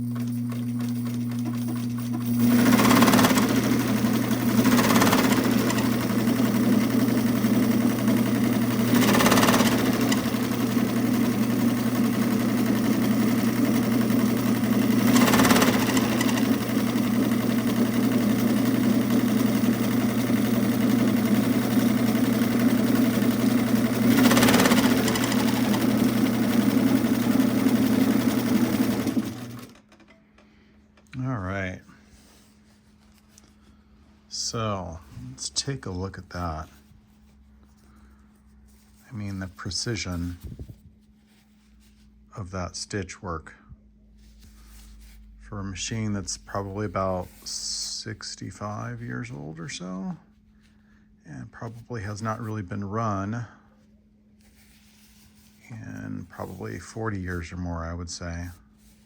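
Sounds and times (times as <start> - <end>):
sewing machine running: 0.0 - 30.2, 55.4 - 57.3.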